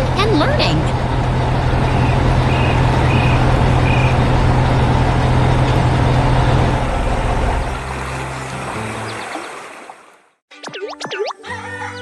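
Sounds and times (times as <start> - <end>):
heavy vehicle engine humming: 0.0 - 9.2.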